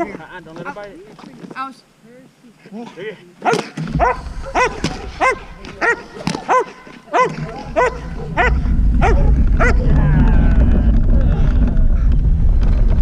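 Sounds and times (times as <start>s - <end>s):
dog barking: 3.4s - 9.8s
loud low rumble: 3.9s - 6.6s, 7.3s - 13.0s.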